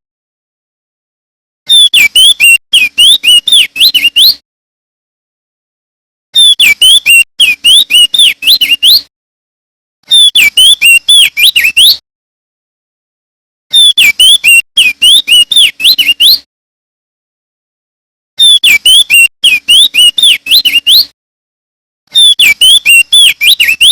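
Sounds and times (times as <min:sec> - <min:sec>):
bird singing whistled notes: 0:01.7 - 0:04.4, 0:06.4 - 0:09.1, 0:10.1 - 0:12.0, 0:13.7 - 0:16.5, 0:18.4 - 0:21.1, 0:22.1 - 0:23.9.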